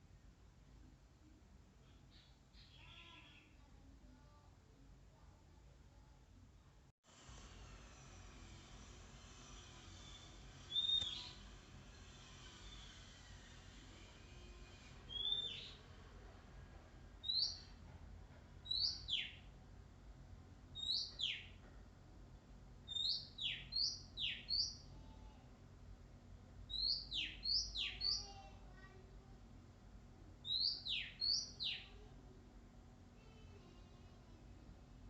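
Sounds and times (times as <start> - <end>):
bird singing whistled notes: 10.7 - 11.4, 15.1 - 15.8, 17.2 - 17.7, 18.7 - 19.4, 20.8 - 21.6, 22.9 - 24.8, 26.7 - 28.3, 30.4 - 31.9.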